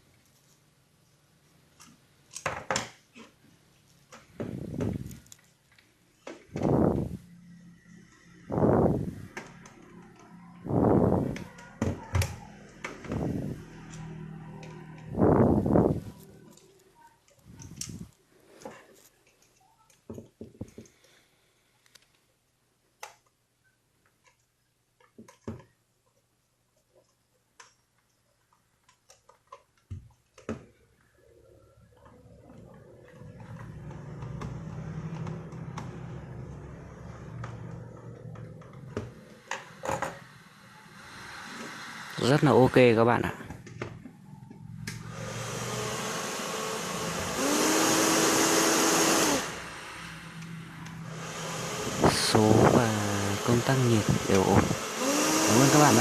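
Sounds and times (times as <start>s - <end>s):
steady hum: 6.5s - 11.5s, 13.0s - 16.8s
hair dryer blowing: 6.6s - 7.2s, 8.5s - 9.2s, 10.7s - 11.4s, 13.0s - 14.2s, 15.1s - 16.2s, 40.8s - 43.0s, 44.9s - 56.0s.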